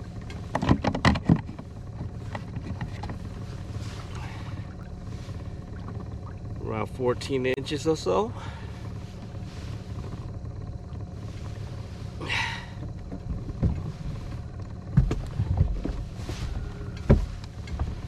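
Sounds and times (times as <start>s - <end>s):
knocks and thumps on boat: 0.0s - 7.1s, 12.7s - 18.0s
boat motor humming: 0.0s - 18.0s.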